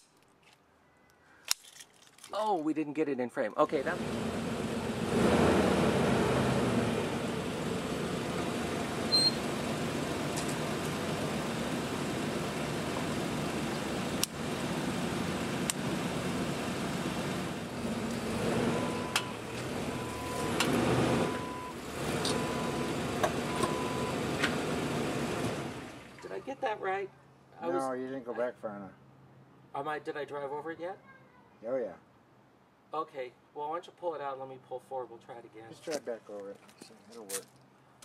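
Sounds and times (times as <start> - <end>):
car engine running: 3.8 - 26.2
short electronic beeps: 9.1 - 9.4.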